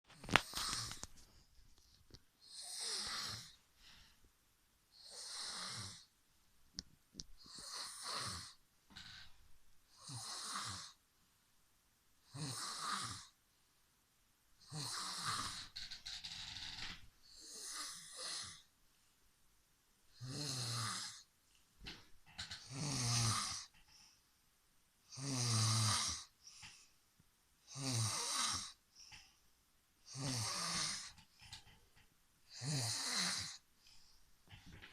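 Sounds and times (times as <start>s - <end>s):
man snoring: 2.5s - 3.6s, 5.0s - 6.1s, 7.5s - 8.6s, 10.0s - 11.0s, 12.3s - 13.3s, 14.6s - 18.6s, 20.2s - 21.3s, 22.5s - 23.7s, 25.1s - 26.3s, 27.7s - 28.8s, 30.1s - 31.2s, 32.5s - 33.6s.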